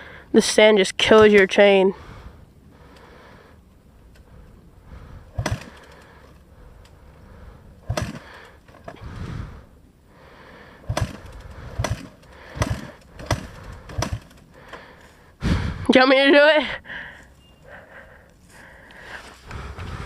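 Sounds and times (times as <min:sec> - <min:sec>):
dirt bike kick-start knocks: 0:05.4 - 0:06.1, 0:07.9 - 0:09.0, 0:10.9 - 0:14.8.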